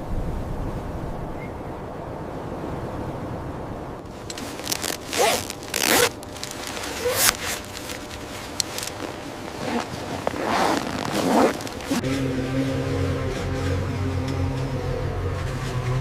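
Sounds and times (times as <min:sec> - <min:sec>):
steady background hiss: 0:00.0 - 0:16.0
scraping crunches: 0:04.1 - 0:12.4.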